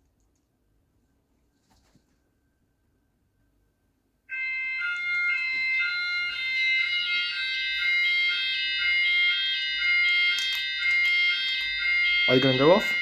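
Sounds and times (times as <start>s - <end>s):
fire alarm sounders two-tone: 4.3s - 13.0s.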